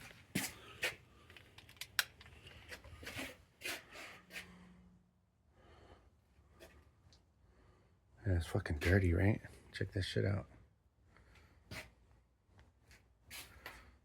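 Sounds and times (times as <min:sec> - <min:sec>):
small sharp clicks: 0:01.3 - 0:02.4.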